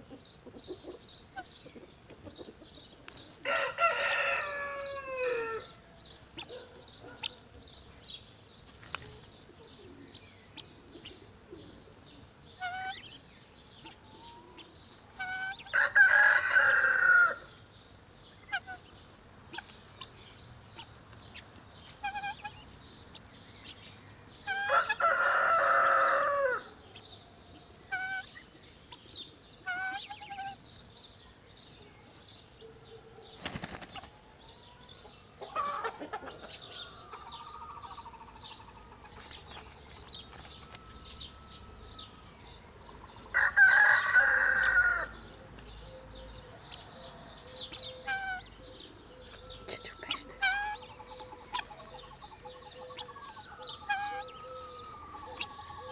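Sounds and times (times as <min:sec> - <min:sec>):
chickens clucking and chirping: 0:00.0 - 0:55.9
rooster crowing: 0:03.4 - 0:06.0, 0:15.6 - 0:17.5, 0:24.6 - 0:26.9, 0:43.3 - 0:45.2, 0:52.6 - 0:55.9.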